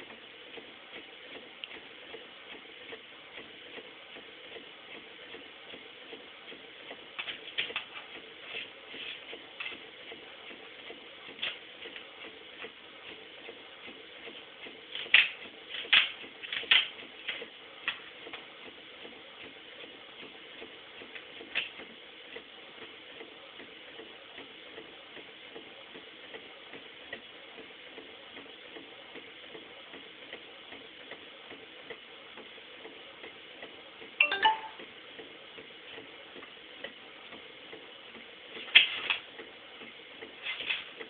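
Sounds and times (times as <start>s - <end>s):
printer mechanical clacks: 0.0s - 34.1s.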